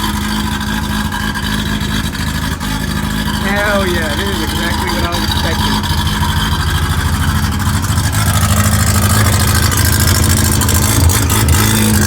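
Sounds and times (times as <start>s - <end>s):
rotary engine running loudly: 0.0s - 12.0s.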